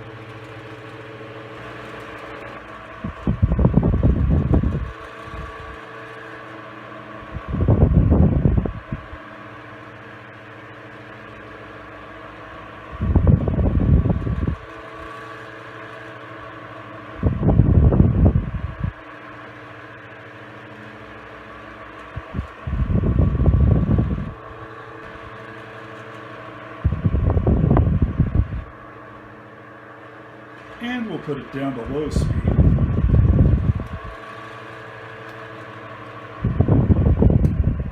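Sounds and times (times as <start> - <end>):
fan airflow buffeting microphone: 0.0 - 37.9
table fan motor hum: 0.0 - 37.9.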